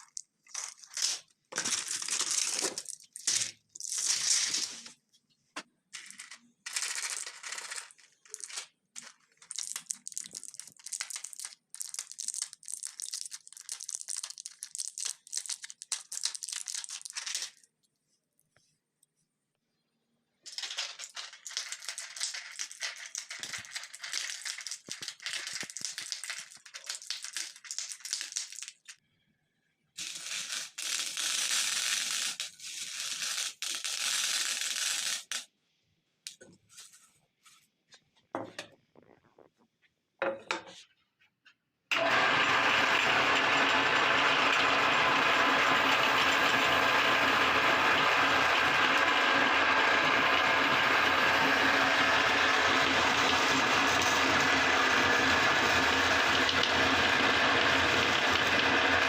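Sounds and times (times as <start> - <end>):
candies clattering: 0.0 - 5.0, 6.0 - 17.7, 20.5 - 29.0, 30.0 - 35.5
meat grinder motor grinding: 41.9 - 59.0.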